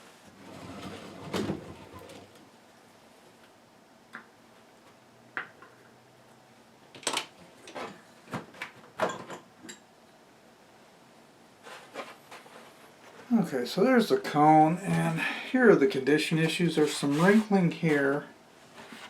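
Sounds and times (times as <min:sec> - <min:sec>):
sharp clicks and knocks of parts: 0:06.9 - 0:09.8.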